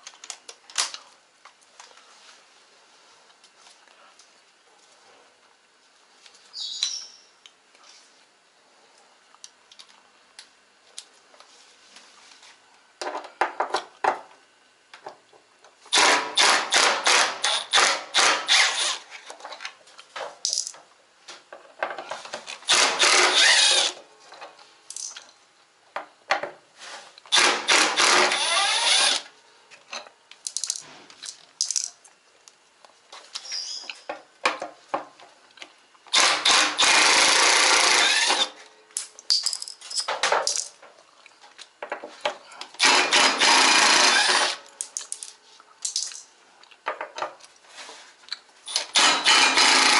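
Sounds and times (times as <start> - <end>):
power drill-driver bursts: 15.9 - 19.0, 22.7 - 24.0, 27.3 - 29.2, 36.1 - 38.5, 42.8 - 44.6, 48.7 - 49.9.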